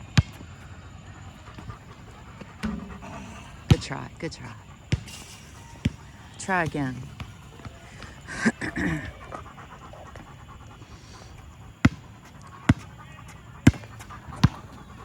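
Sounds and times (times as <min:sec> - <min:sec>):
basketball bouncing on court: 0:00.0 - 0:08.2, 0:11.8 - 0:15.0.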